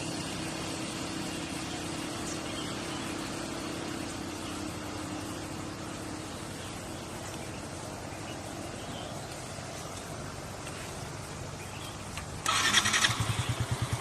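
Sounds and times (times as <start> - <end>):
engine starting and running: 11.9 - 14.0.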